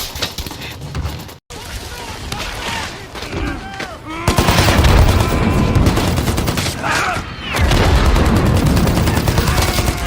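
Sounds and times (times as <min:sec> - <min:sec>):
rifles and machine guns firing: 0:04.3 - 0:07.0, 0:07.6 - 0:10.0.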